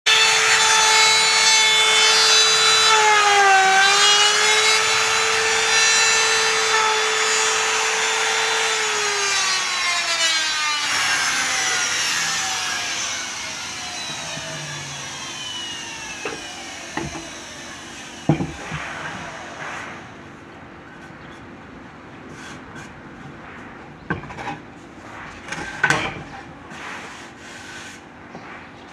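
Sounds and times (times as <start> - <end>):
electric wood router whining: 0.1 - 20.2.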